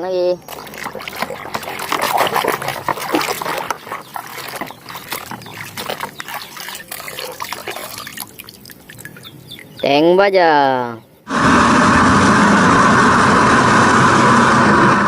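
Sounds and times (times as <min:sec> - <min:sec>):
water splashing and sloshing: 0:00.0 - 0:10.0
rubbing and scraping: 0:00.4 - 0:09.3.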